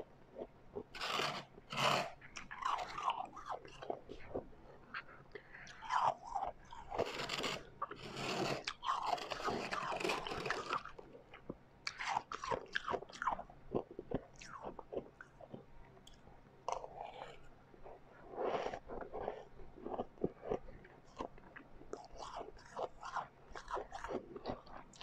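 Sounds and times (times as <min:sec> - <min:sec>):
ice crunching between teeth: 0:01.0 - 0:04.1, 0:05.7 - 0:15.0.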